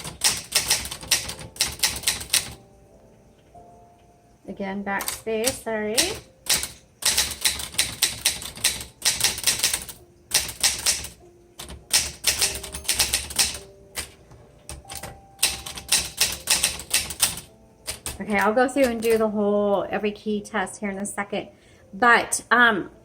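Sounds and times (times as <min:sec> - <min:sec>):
manual typewriter typing: 0:00.0 - 0:02.6, 0:05.0 - 0:19.3.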